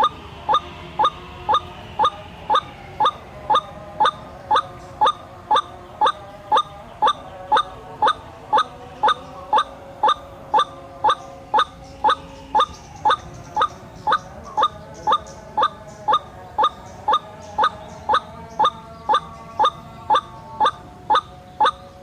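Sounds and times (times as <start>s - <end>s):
bird lure call rising notes: 0.0s - 22.0s.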